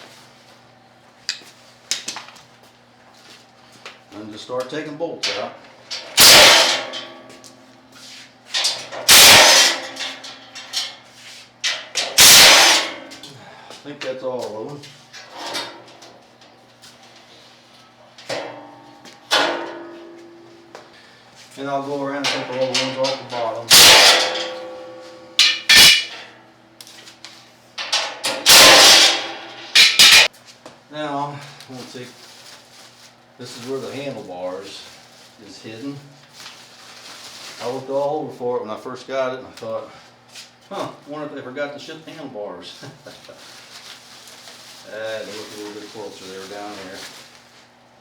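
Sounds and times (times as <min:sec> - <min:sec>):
metal clatter: 0:05.3 - 0:07.3, 0:08.6 - 0:11.0, 0:11.7 - 0:13.1, 0:22.2 - 0:26.4, 0:27.8 - 0:30.3
metal clanks on crate: 0:05.3 - 0:07.4, 0:08.6 - 0:11.0, 0:22.2 - 0:26.3, 0:27.8 - 0:30.3.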